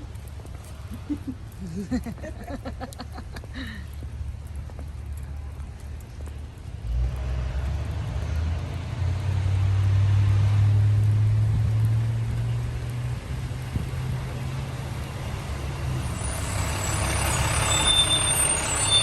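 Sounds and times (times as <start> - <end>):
tyres hissing on wet road: 0.0 - 19.0
vehicle engine hum: 0.0 - 19.0.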